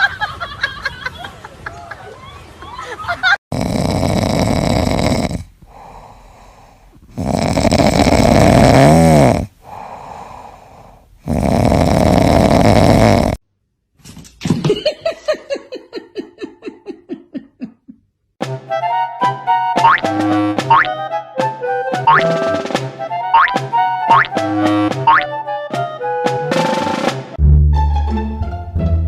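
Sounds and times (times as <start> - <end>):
loud snoring: 3.5 - 13.4.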